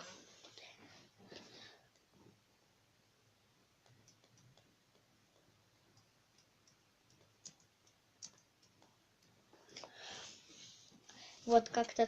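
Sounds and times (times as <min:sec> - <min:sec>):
small clicks and ticks: 0:03.8 - 0:09.9
sharp clicks: 0:05.9 - 0:09.3.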